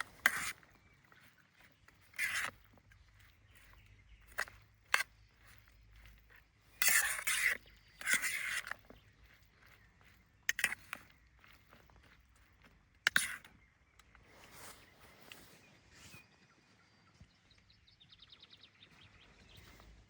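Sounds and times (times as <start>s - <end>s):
short scrapes: 0.0s - 0.7s, 2.0s - 2.8s, 6.8s - 8.9s, 10.5s - 11.0s.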